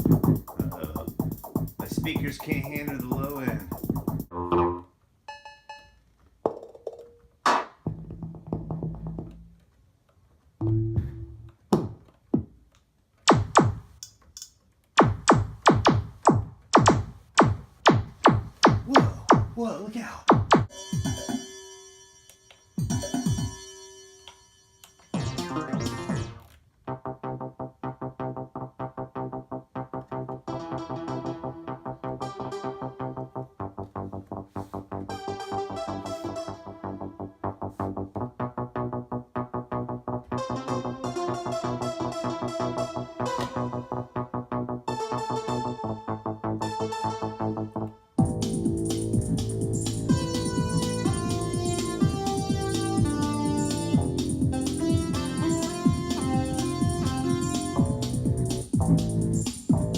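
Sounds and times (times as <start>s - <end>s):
electronic drum-like hits: 0.0s - 4.3s, 13.3s - 13.9s, 15.0s - 19.6s, 20.3s - 21.3s, 48.2s - 59.9s
synthesizer repeating pattern: 0.0s - 4.3s, 15.0s - 19.6s, 22.8s - 23.6s, 25.2s - 26.4s, 44.9s - 59.9s
held synthesizer notes: 0.0s - 4.9s, 25.1s - 59.9s
synthesizer falling zap: 25.2s - 26.4s.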